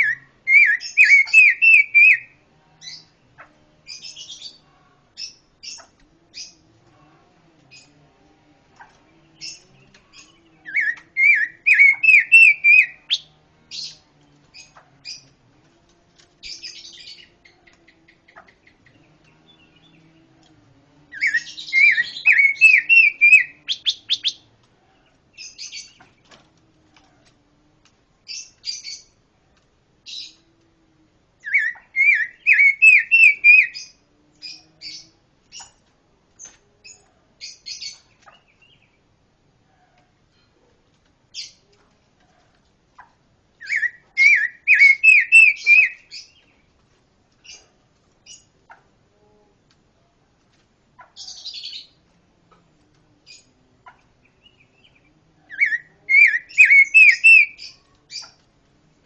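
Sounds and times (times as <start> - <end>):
sharp high bird chirps: 0.0 - 2.3, 9.4 - 13.3, 21.2 - 24.4, 31.5 - 33.9, 43.6 - 46.3, 55.6 - 58.4
songbird singing rising notes: 0.0 - 26.6, 31.4 - 35.8, 43.5 - 46.7, 51.2 - 58.5.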